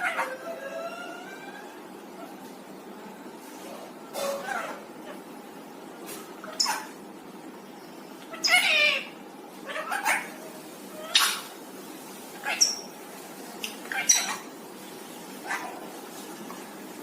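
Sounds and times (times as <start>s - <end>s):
parrot squawking: 0.0s - 2.4s, 4.1s - 5.2s, 6.4s - 7.0s, 8.2s - 11.5s, 12.4s - 12.9s, 13.6s - 14.5s, 15.4s - 15.8s.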